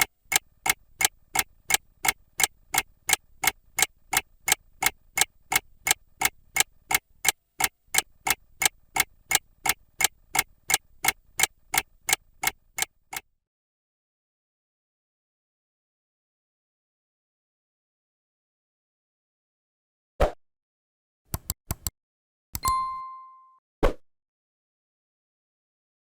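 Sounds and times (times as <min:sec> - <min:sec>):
mechanical clock ticking: 0:00.0 - 0:13.3, 0:21.3 - 0:21.9.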